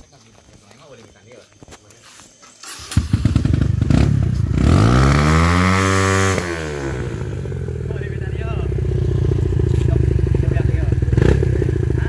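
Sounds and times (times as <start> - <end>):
motorcycle engine revving: 2.6 - 12.0.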